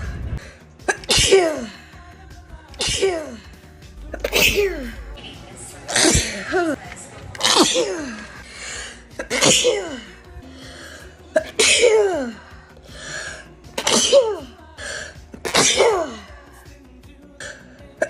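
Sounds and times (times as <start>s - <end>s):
person sneezing: 0.8s - 1.8s, 2.8s - 3.5s, 4.1s - 5.1s, 5.9s - 6.8s, 13.8s - 14.5s, 15.4s - 16.3s.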